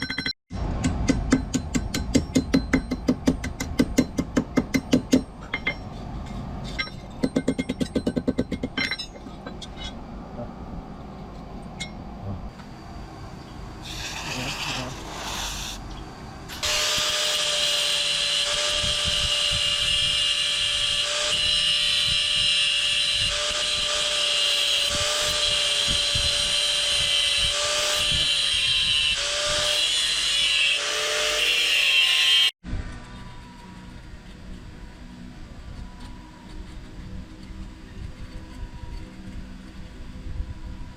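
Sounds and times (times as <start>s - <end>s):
power tool high whine: 12.5s - 40.9s.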